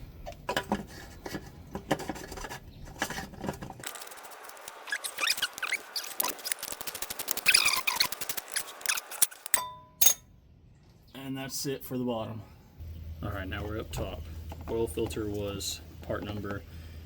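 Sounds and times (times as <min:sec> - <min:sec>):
short squeaks: 0:07.4 - 0:09.4.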